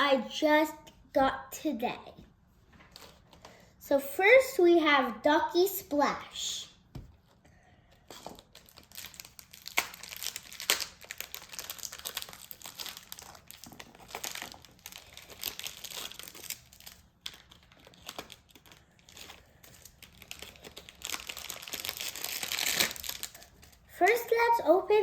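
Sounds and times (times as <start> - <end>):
plastic packaging crinkling: 8.0 - 24.7.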